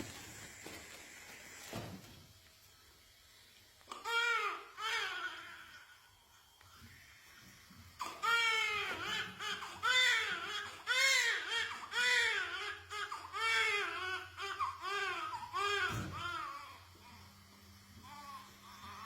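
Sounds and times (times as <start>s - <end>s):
newborn baby crying: 3.9s - 6.0s, 8.0s - 16.9s.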